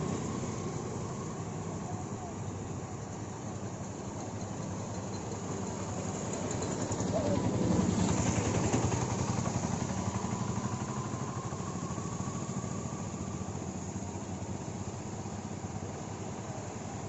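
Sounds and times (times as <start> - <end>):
engine running: 0.0 - 17.0.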